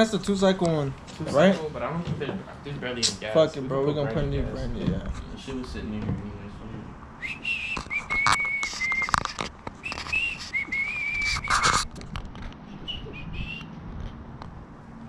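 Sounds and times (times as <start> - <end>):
person whistling a tune: 7.2 - 9.1, 9.8 - 11.7, 12.9 - 13.6.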